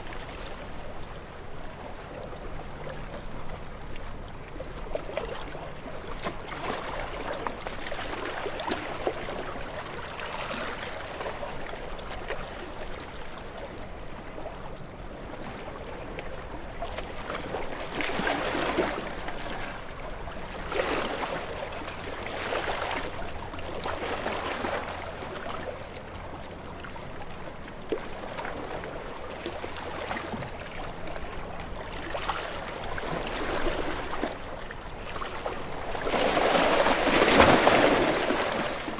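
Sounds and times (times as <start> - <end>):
ocean waves breaking over rocks: 27.6 - 38.9.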